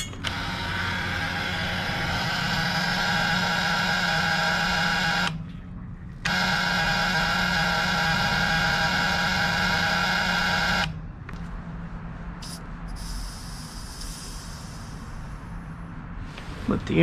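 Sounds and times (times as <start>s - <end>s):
electric fuel pump whining: 0.0s - 5.5s, 6.2s - 11.4s.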